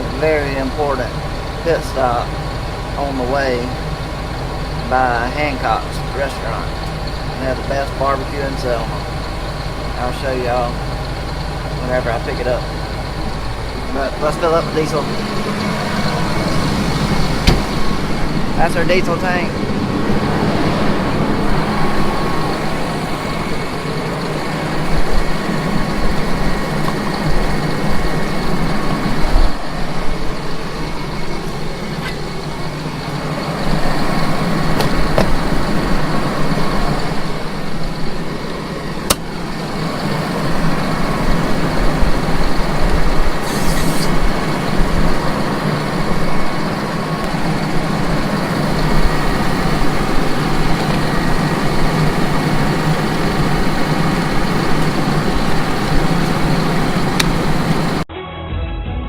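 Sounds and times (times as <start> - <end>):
vehicle engine running: 0.0 - 58.1
sharp clicks: 39.0 - 39.4, 57.1 - 57.4.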